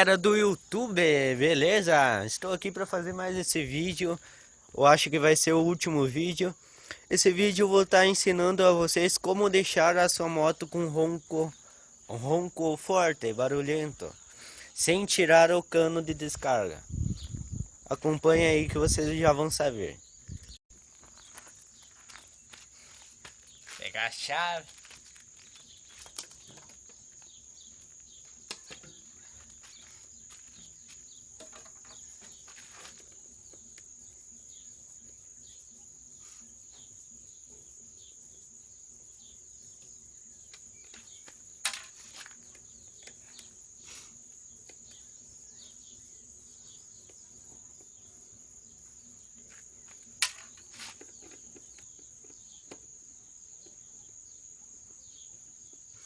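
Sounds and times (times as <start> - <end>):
insects droning: 0.0 - 56.0.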